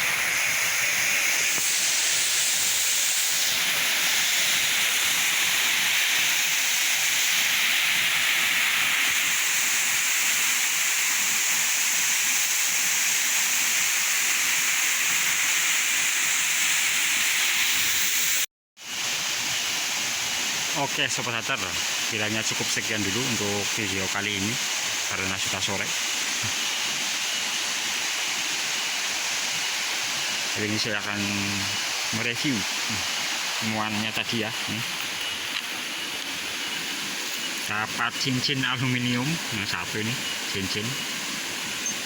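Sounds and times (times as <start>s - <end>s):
waterfall rushing: 0.0s - 14.0s, 19.4s - 42.0s.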